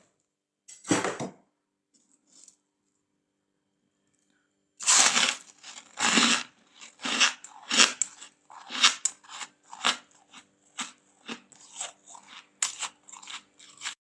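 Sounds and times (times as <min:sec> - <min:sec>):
freezer frost crunching: 0:04.8 - 0:14.0.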